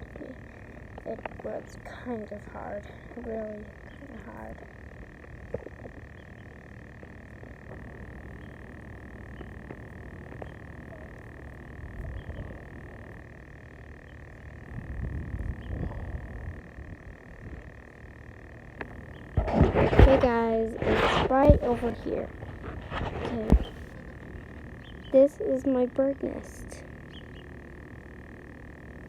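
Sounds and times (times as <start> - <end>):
handling rumble and rustling: 0.0 - 29.0
frogs trilling in chorus: 2.4 - 16.6, 17.7 - 19.4, 23.5 - 29.0.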